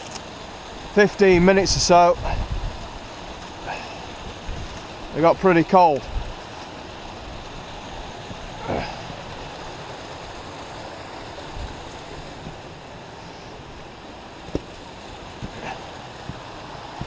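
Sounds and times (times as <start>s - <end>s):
wind rushing over microphone: 1.3s - 3.0s, 4.1s - 5.2s, 6.0s - 6.4s.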